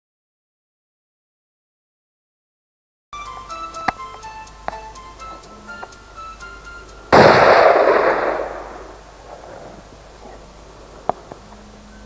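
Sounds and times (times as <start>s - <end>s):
rifle shot: 7.1s - 9.8s.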